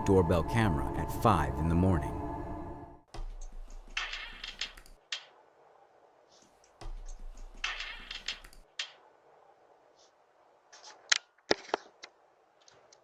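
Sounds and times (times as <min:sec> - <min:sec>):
rapid clicking and scraping: 0:03.2 - 0:05.3, 0:06.4 - 0:09.0.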